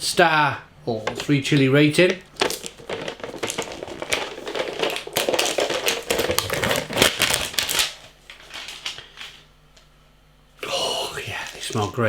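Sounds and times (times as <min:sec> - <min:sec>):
plastic packaging crinkling: 0:01.0 - 0:09.5, 0:11.1 - 0:12.0.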